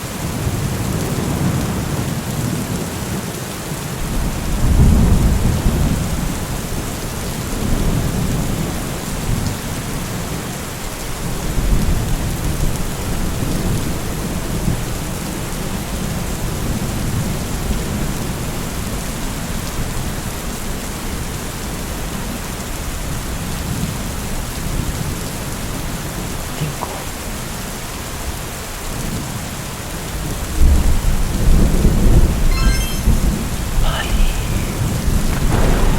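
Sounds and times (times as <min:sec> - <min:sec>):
steady rain: 0:00.0 - 0:35.9
thunder rumbling: 0:34.7 - 0:35.9.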